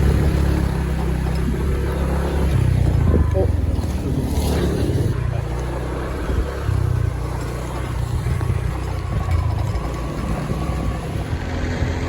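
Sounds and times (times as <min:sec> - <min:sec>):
wind noise: 0:00.0 - 0:05.3
motorbike engine rumble: 0:00.0 - 0:12.0.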